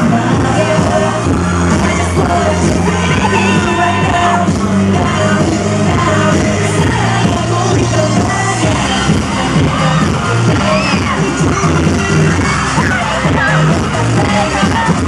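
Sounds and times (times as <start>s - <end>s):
pop song with singing: 0.0s - 15.0s
audience shouting: 1.7s - 4.5s, 8.8s - 15.0s.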